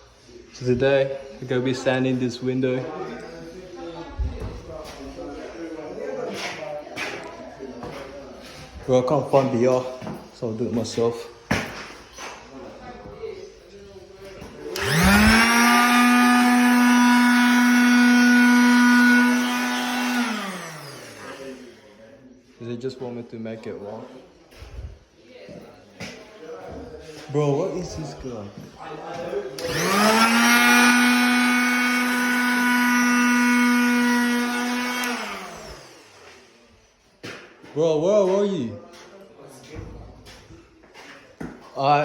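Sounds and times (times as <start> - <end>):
electric power sander whining: 14.8 - 21.7, 29.6 - 36.3.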